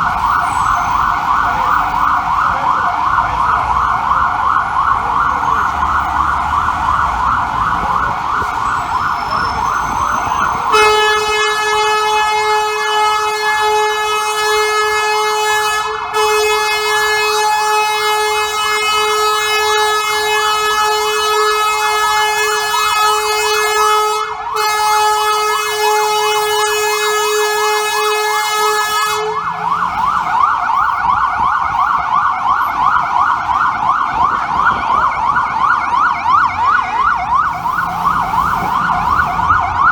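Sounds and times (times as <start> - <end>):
electronic siren yelping: 0.0 - 39.9
air horn long blast: 10.7 - 29.7.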